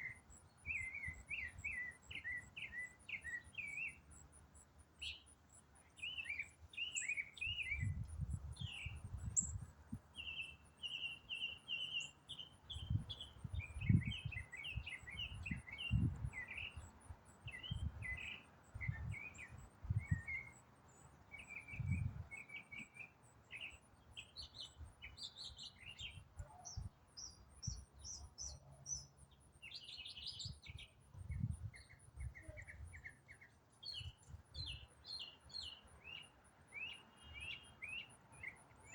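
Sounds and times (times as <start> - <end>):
songbird singing: 0.0 - 38.9.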